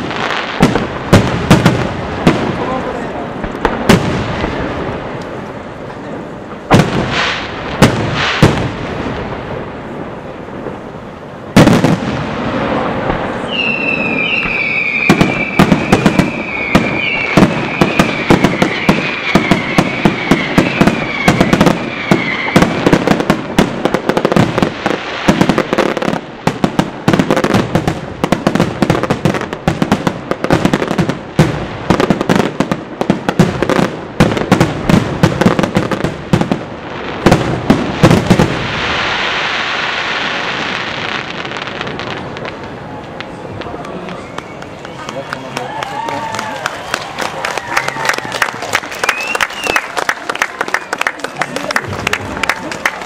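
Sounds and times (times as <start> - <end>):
rapid firework bangs and crackle: 0.0 - 45.2
wavering high firework whistle: 13.4 - 23.0, 49.0 - 49.9.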